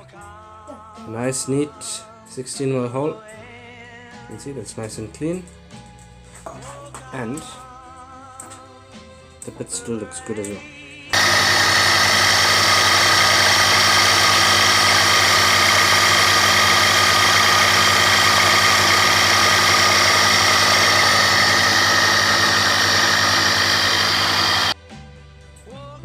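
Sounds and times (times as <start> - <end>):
electric motor humming with whine: 11.2 - 24.8.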